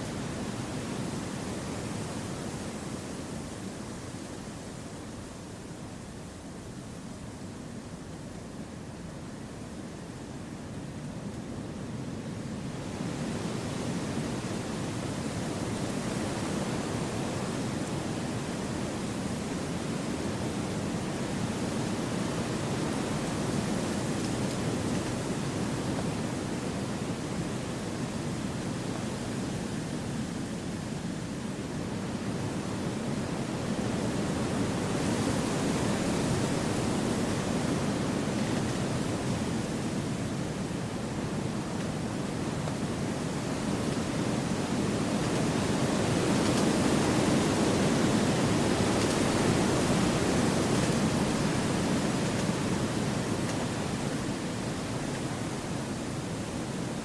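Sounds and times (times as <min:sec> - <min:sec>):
wind rushing through forest: 0:00.0 - 0:57.0.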